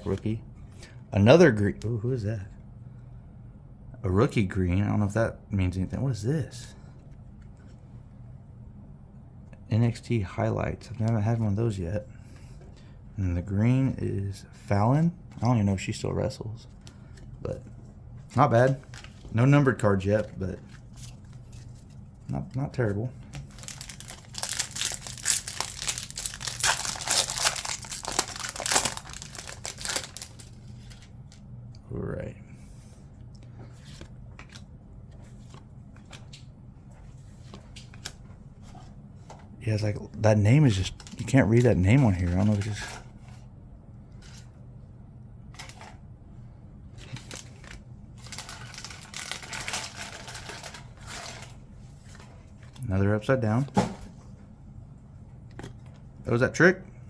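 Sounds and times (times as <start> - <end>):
trading cards rustling: 18.3 - 31.4, 40.7 - 43.0, 47.0 - 52.3
foil wrapper crinkling: 23.3 - 31.0, 47.0 - 51.6.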